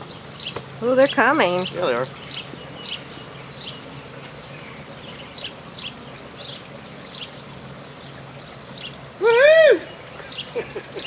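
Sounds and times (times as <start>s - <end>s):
bird chirping: 1.4s - 9.0s.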